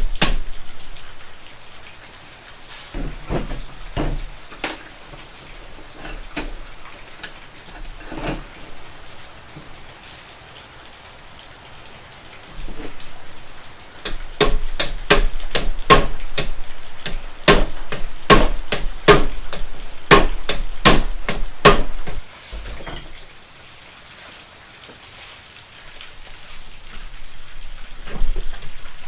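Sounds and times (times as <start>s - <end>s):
hammer striking metal parts: 6.0s - 6.6s, 14.0s - 23.2s.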